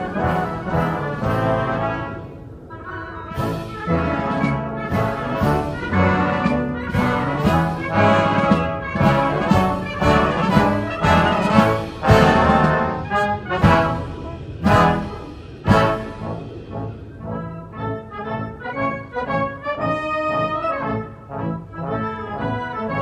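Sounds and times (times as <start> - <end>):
brass band playing: 0.0 - 23.0.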